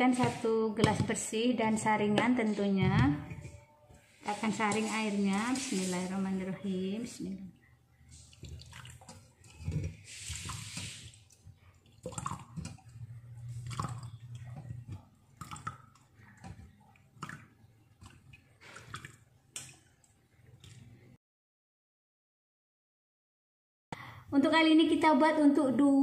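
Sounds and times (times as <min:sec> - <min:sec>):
liquid trickling and dripping: 0:08.1 - 0:21.1
liquid pouring into a glass: 0:11.8 - 0:19.3.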